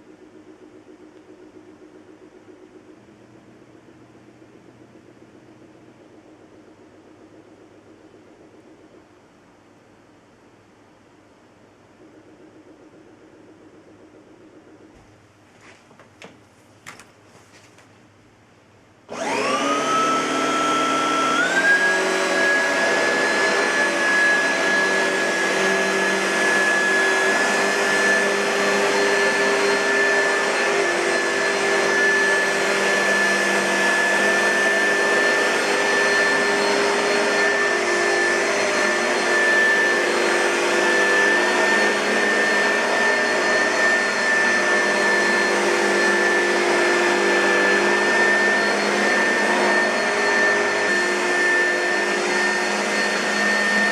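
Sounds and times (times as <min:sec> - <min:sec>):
vacuum cleaner motor whine: 0:00.0 - 0:09.6, 0:11.6 - 0:15.8, 0:19.1 - 0:53.9.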